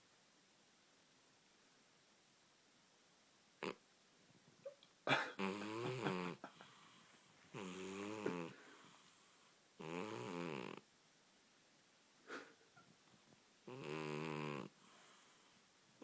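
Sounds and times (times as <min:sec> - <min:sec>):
cat snoring: 0:05.4 - 0:10.8, 0:13.7 - 0:15.6.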